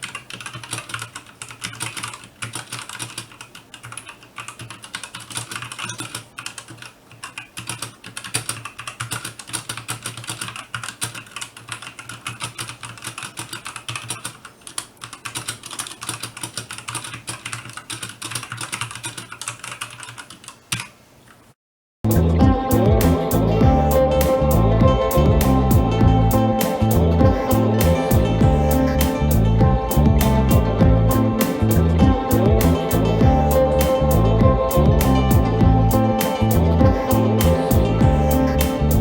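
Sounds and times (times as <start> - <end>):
mechanical keyboard typing: 0.0 - 20.9.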